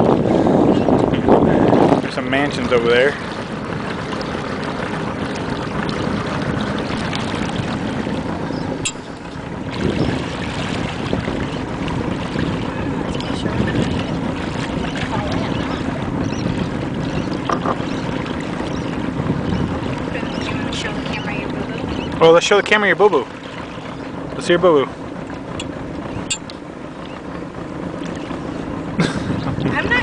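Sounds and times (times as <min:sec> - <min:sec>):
water rushing and splashing: 0:00.0 - 0:30.0
wind buffeting microphone: 0:00.0 - 0:30.0.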